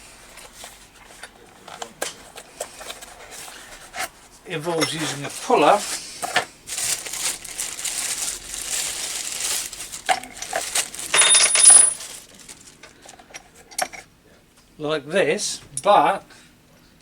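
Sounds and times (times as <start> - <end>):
metal tool parts rattling: 8.8 - 12.2.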